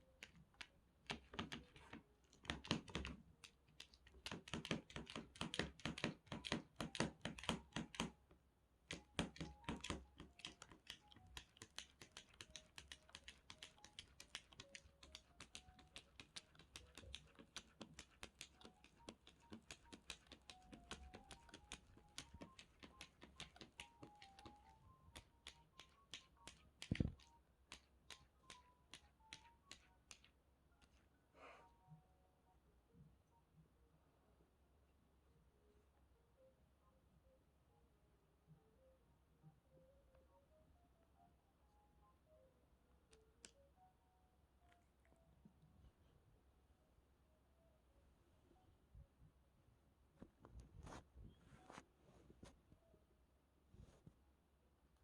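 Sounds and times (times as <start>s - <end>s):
faint background music: 0.0s - 55.0s
cat's paws tapping: 0.1s - 8.2s, 8.8s - 30.3s.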